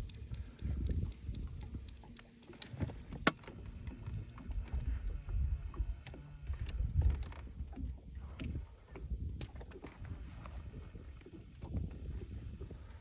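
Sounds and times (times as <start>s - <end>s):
water lapping against boat hull: 0.0s - 13.0s
sharp clicks and knocks: 2.1s - 4.9s.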